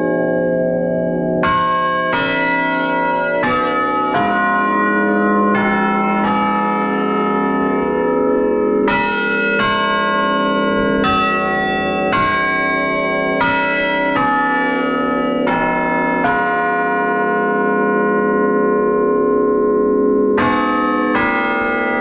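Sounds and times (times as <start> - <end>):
tower bells ringing a tune: 0.0 - 22.0.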